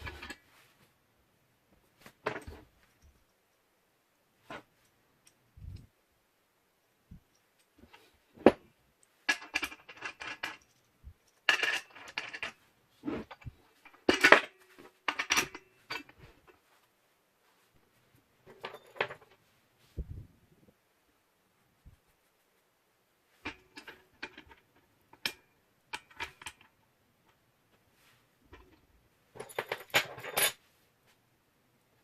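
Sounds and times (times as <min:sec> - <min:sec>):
metal parts clinking and clattering: 0:09.3 - 0:12.6, 0:13.2 - 0:16.3, 0:18.5 - 0:19.4, 0:29.3 - 0:30.6.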